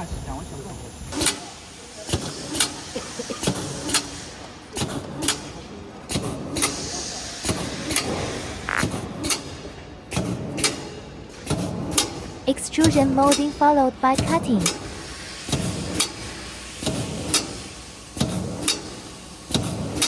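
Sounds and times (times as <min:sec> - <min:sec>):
sharp mechanical clacks: 0:01.1 - 0:01.5, 0:02.1 - 0:20.0
steady machine hum: 0:11.1 - 0:18.6.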